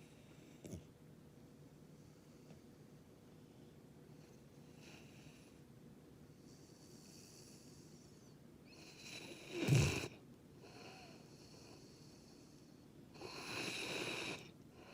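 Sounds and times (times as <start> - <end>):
dog snoring: 0.0 - 0.9, 6.3 - 14.9.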